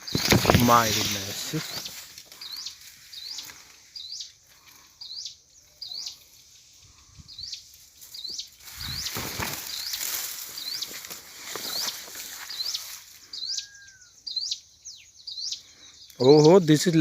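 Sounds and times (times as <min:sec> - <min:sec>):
rustling noise: 0:00.0 - 0:03.7, 0:07.7 - 0:13.2
small bird chirping: 0:00.0 - 0:17.0.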